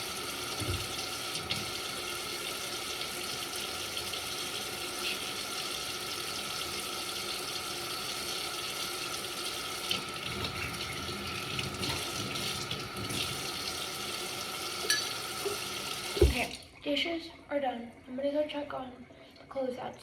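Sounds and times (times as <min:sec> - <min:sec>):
tap running into a sink: 0:00.5 - 0:01.8, 0:09.8 - 0:13.7, 0:14.8 - 0:16.6
dishes clinking: 0:14.8 - 0:15.6.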